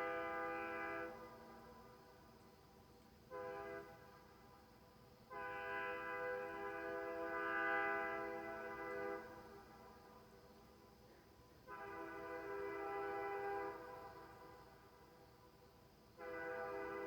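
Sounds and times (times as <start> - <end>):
air train horn blasts: 0.0 - 1.9, 3.3 - 4.4, 5.3 - 10.1, 11.6 - 15.0, 16.2 - 17.0.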